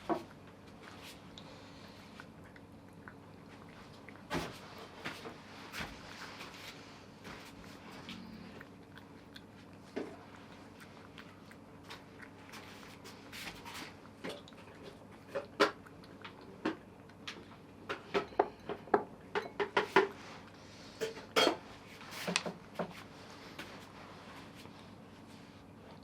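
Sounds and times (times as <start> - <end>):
dishes and utensils clattering: 21.0 - 21.6.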